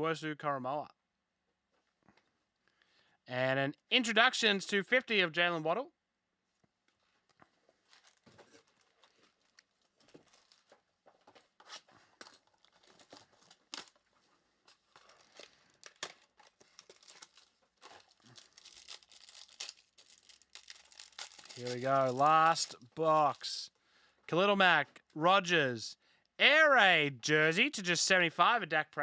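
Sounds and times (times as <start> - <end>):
plastic wrapping crinkling and tearing: 7.1 - 23.5.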